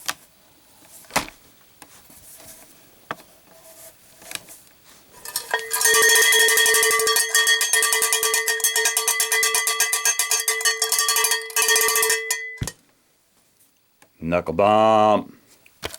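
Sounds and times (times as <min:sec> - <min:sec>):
cowbell struck in fast rhythm: 0:05.3 - 0:12.7.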